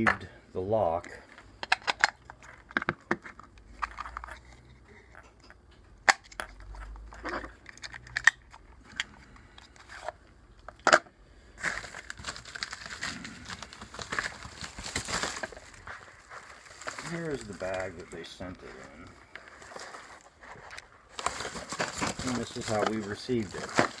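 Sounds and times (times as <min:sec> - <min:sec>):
plastic bag crinkling: 0:11.5 - 0:24.0.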